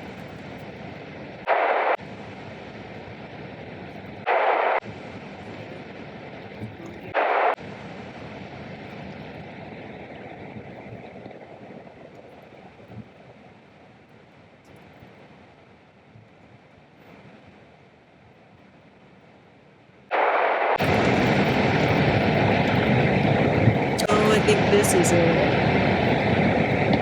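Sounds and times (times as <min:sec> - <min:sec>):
bursts of hiss-like noise: 0:01.5 - 0:02.4, 0:04.2 - 0:06.4.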